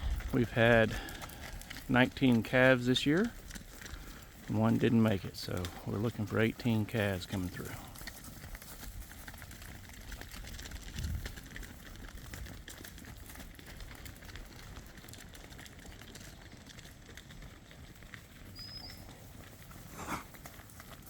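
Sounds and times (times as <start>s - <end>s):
steady low rumble: 0.0s - 2.6s
hooves stepping softly: 0.0s - 21.0s.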